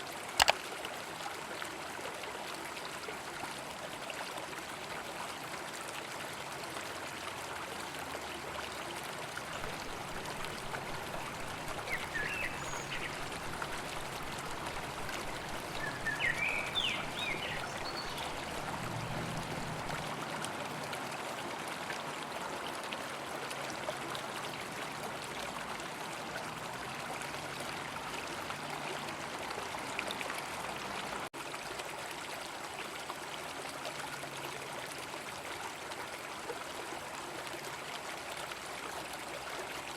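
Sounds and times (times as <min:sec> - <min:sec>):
river rushing: 0:09.5 - 0:23.3.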